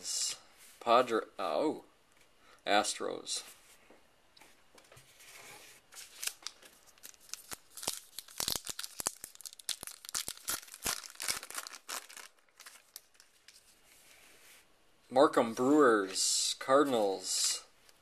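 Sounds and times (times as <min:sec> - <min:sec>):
wrapper tearing and crinkling: 0:06.0 - 0:13.6.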